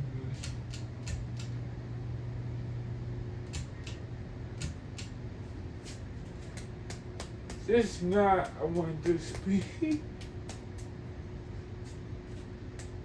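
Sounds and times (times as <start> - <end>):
ceiling fan motor hum: 0.0 - 13.0
sharp light clicks: 0.4 - 1.6, 3.5 - 4.0, 4.6 - 5.2.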